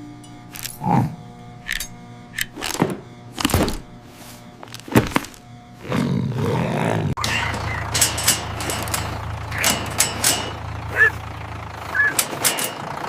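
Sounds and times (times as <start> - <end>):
thunk sound effects: 2.4 - 3.9, 4.6 - 5.4
loud steady noise: 7.2 - 13.0.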